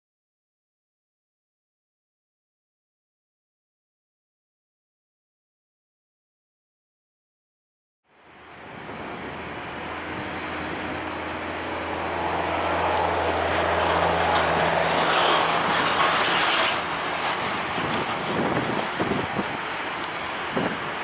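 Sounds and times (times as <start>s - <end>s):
jet plane passing: 8.1s - 21.0s.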